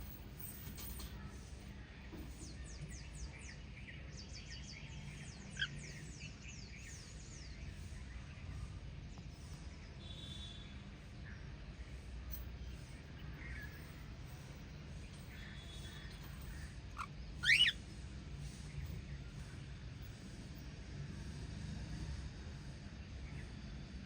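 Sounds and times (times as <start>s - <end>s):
parrots chirping: 16.9s - 17.8s
parrot whistle: 17.0s - 17.8s.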